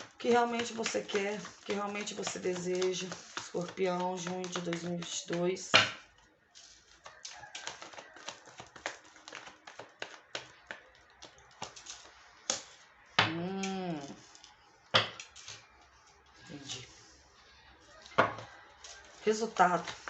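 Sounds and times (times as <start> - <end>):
cards being shuffled: 0.0 - 12.8, 17.9 - 20.0
person humming: 13.3 - 14.2.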